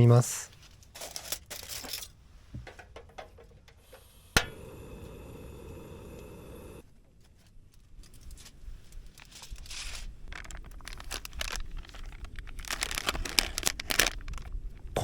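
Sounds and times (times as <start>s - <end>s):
plastic packaging crinkling: 9.1s - 14.8s.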